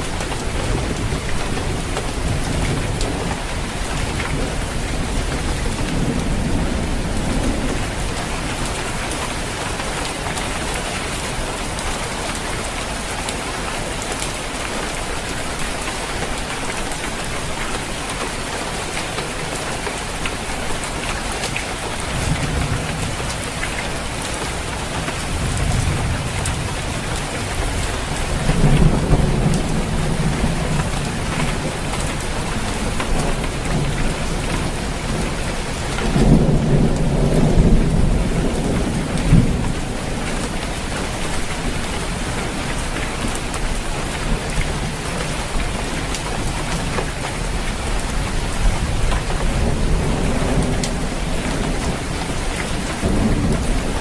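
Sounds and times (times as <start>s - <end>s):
heavy rain on a roof: 0.0s - 54.0s
thunder rumbling: 22.1s - 45.6s, 46.2s - 54.0s.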